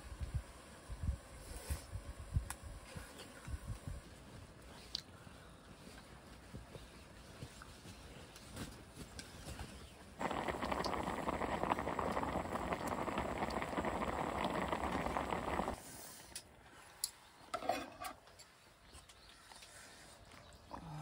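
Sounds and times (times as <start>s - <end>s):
broth boiling in a pot: 0.0s - 4.9s, 6.4s - 16.3s.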